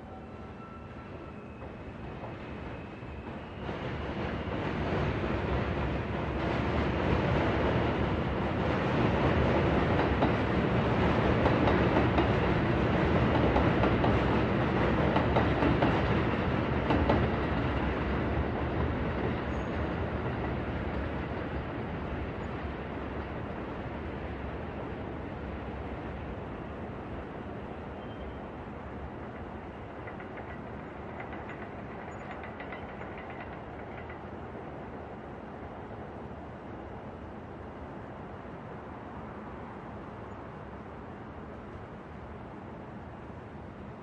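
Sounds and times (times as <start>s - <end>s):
city night ambience: 0.0s - 44.0s
train passing rumble: 0.0s - 44.0s
train clatter: 1.5s - 22.2s, 29.0s - 35.1s.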